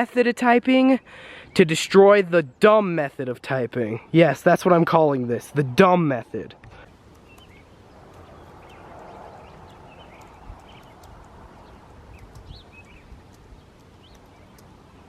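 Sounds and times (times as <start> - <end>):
light clicks: 6.6 - 14.8.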